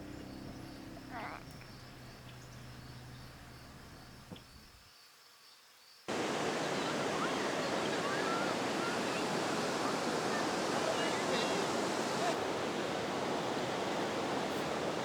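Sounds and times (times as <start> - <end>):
rushing river water: 6.1 - 15.0.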